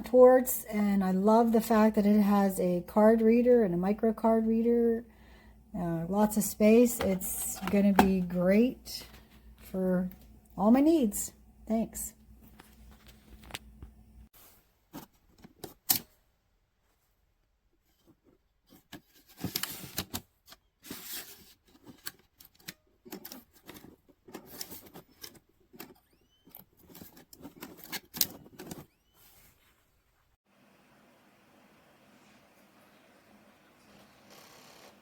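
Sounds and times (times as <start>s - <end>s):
rustling: 23.2s - 30.4s.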